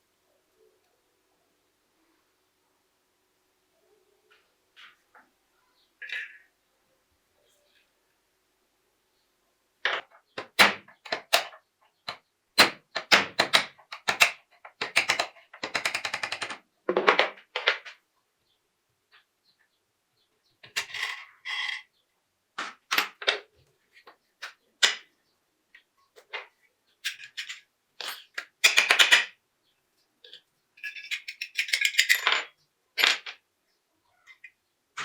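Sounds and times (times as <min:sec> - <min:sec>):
sharp metallic clicks and knocks: 0:09.9 - 0:16.6.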